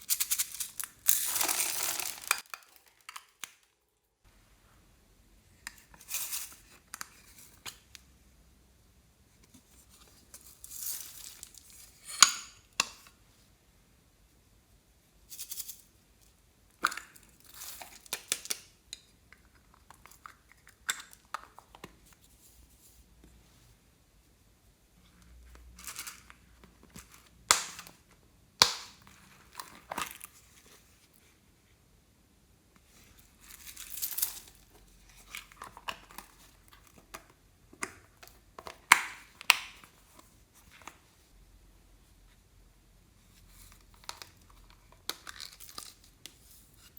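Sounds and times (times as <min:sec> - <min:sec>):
hands handling slime: 0:00.1 - 0:03.7.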